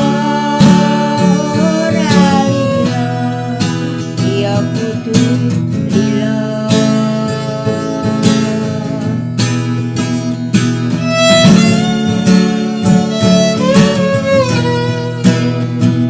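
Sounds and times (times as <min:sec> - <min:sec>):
sliding lead melody: 0:00.0 - 0:04.8, 0:08.1 - 0:16.0
acoustic guitar strumming chords: 0:00.0 - 0:16.0.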